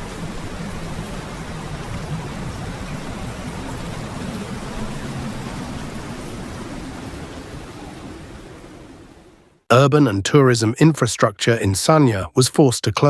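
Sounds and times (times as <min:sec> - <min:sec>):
heavy rain falling: 0:00.0 - 0:09.6.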